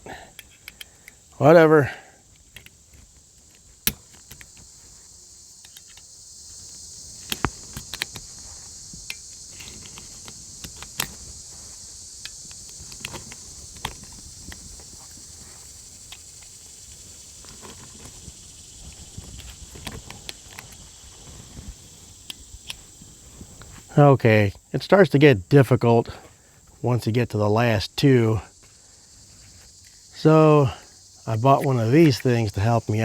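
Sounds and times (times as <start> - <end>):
steady high hiss: 0.0 - 33.0
cartridges clicking into magazine: 0.3 - 1.3.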